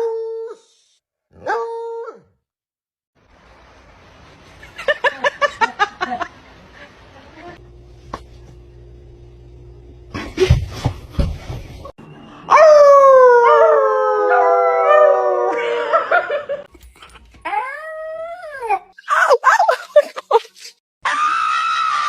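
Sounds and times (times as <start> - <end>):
dog howling: 12.2 - 16.6.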